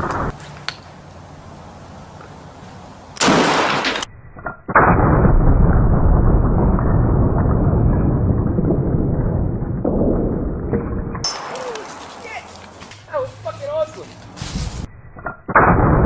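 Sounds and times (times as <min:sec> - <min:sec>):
loud gunshot: 0:03.2 - 0:04.1
dull rumbling boom: 0:04.7 - 0:11.4.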